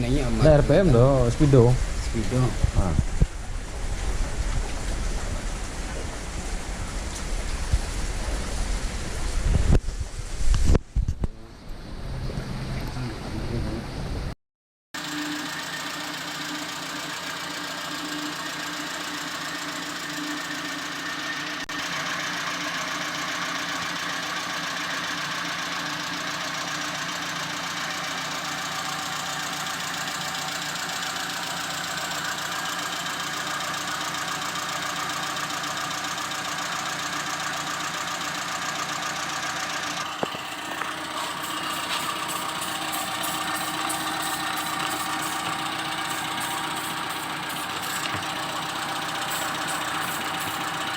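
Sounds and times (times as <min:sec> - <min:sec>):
car engine running: 0:00.0 - 0:09.4, 0:15.0 - 0:50.9.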